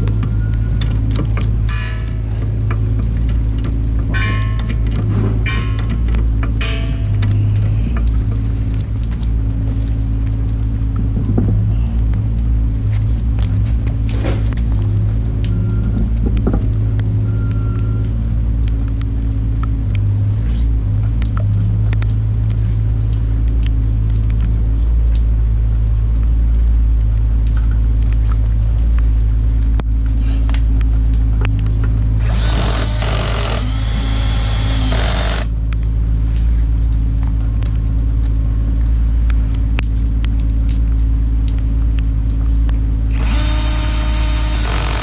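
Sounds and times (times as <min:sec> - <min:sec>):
steady low hum: 0:00.0 - 0:45.0
impact wrench spinning: 0:32.2 - 0:35.5, 0:43.2 - 0:45.0.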